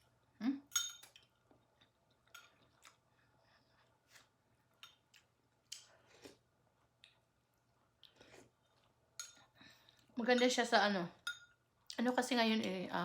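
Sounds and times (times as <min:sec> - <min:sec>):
spoon clinking against bowl: 0:00.7 - 0:01.2, 0:11.2 - 0:11.6.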